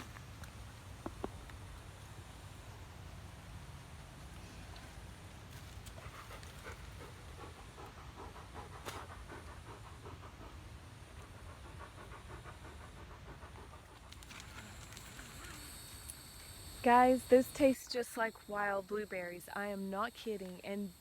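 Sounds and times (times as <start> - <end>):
dog panting rapidly: 5.9 - 14.5.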